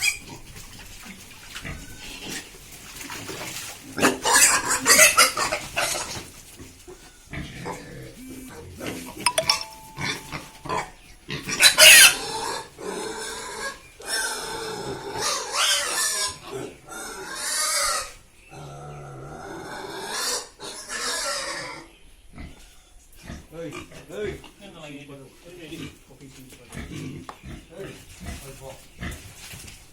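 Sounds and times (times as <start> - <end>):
pigs squealing: 4.0 - 6.2, 11.5 - 21.9.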